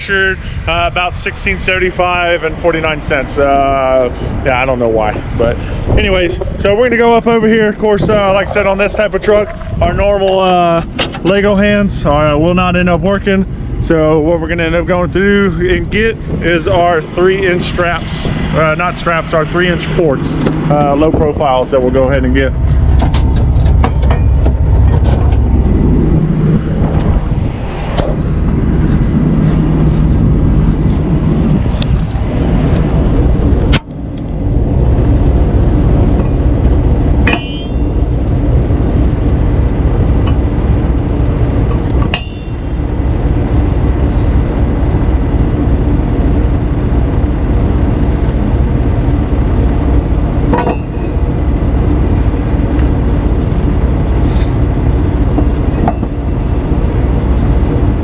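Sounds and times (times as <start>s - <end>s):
diesel truck engine idling: 0.3s - 27.5s
sharp metallic clanks: 22.9s - 25.4s, 37.2s - 38.2s, 41.7s - 43.0s, 50.5s - 51.2s.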